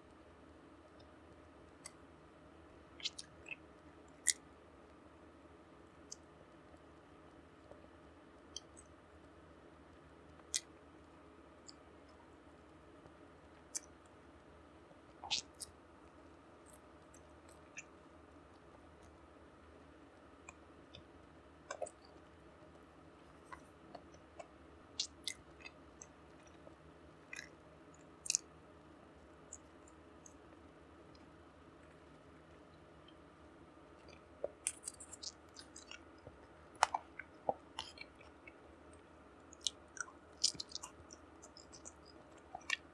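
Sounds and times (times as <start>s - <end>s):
faint steady hum: 0.0s - 42.9s
chewing clicks and smacks: 3.0s - 3.6s, 4.2s - 4.4s, 15.2s - 15.8s, 21.7s - 22.2s, 23.5s - 26.7s, 27.3s - 28.5s, 34.0s - 42.9s.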